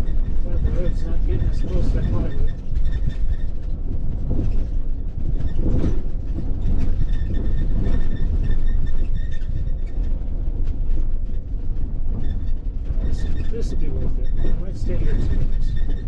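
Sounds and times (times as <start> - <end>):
van knocks and rattles: 0.1 - 16.0.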